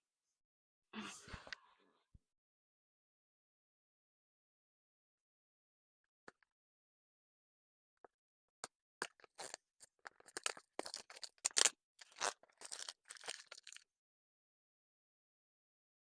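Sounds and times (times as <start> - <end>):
packaging crinkling and tearing: 9.2 - 13.8.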